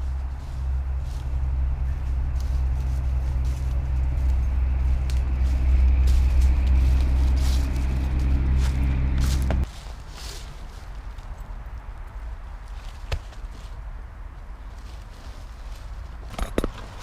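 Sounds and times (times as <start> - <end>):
car engine running: 0.0 - 9.6.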